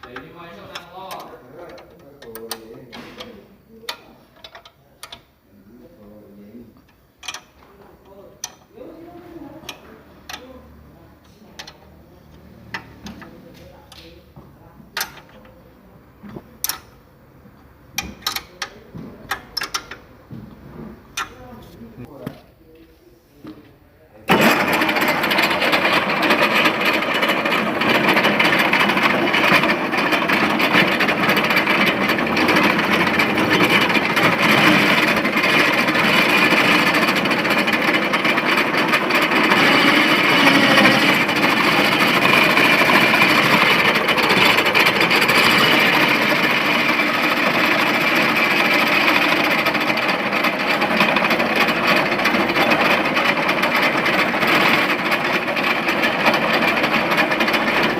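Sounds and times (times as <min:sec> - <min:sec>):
power tool rattling: 0:24.3 - 0:57.9.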